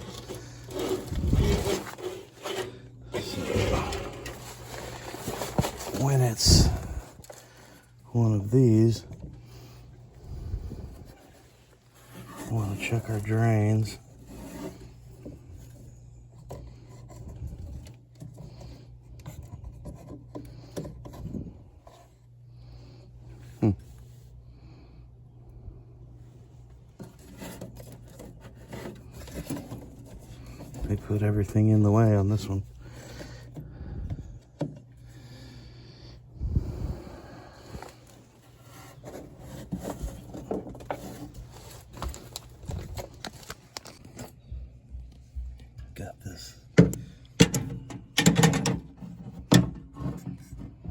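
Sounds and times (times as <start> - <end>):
hands rubbing and scraping hoses: 0.0 - 7.5, 10.3 - 15.0
steady low hum: 0.0 - 50.9
clicks and knocks of handling parts: 46.8 - 50.9.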